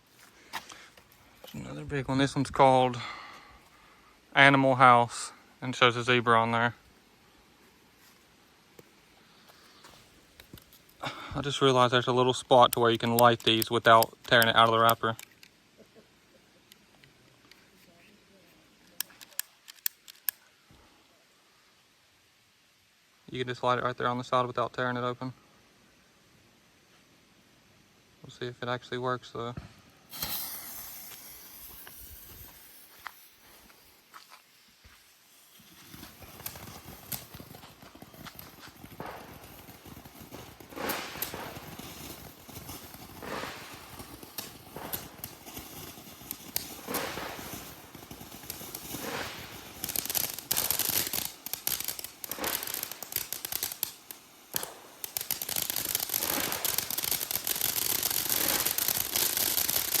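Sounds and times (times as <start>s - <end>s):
dense loud firework crackling: 29.5s - 60.0s
firework pops: 29.5s - 60.0s.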